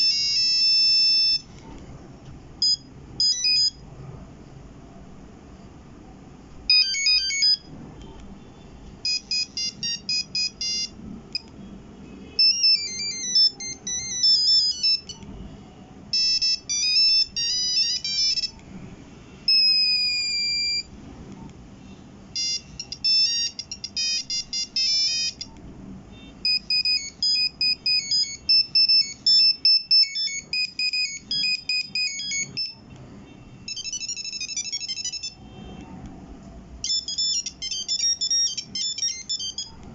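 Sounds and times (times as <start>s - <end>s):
monophonic phone ringtones: 0.0s - 1.5s, 2.6s - 3.8s, 6.7s - 7.7s, 9.0s - 11.4s, 12.3s - 15.2s, 16.1s - 18.6s, 19.5s - 20.9s, 22.3s - 25.5s, 26.2s - 32.8s, 33.6s - 35.8s, 36.8s - 39.8s.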